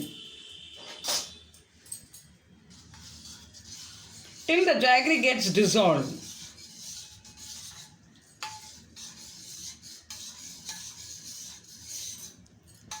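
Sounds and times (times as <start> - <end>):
spoon stirring scraping swish: 2.5 - 13.0
spoon clinking against vessel: 12.7 - 13.0.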